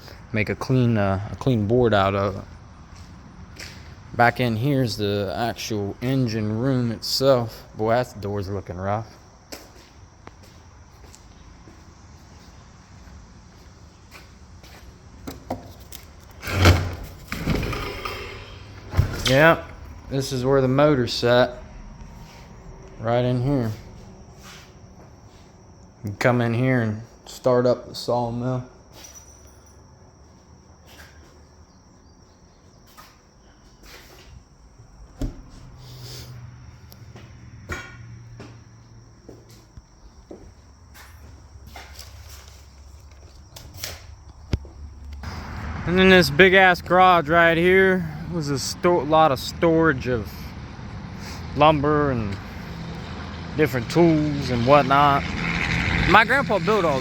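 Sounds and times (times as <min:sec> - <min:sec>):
footsteps: 0:02.3 - 0:04.0, 0:09.0 - 0:25.6, 0:35.2 - 0:43.9
old door scraping and creaking: 0:15.8 - 0:24.8.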